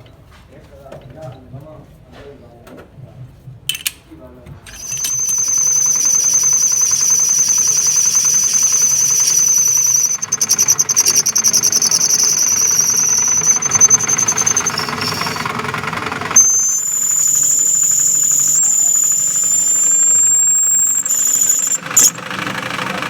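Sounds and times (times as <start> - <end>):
electric grinder whining on steel: 4.7 - 23.0.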